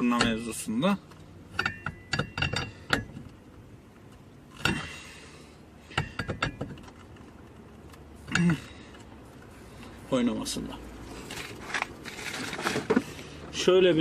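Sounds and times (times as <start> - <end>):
clicks and knocks of hand work: 5.9 - 9.1
rustling: 11.0 - 13.4.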